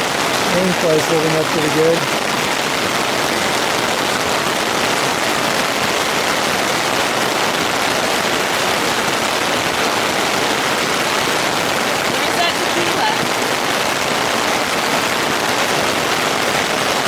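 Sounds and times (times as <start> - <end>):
rain pattering on a tent: 0.0 - 17.0.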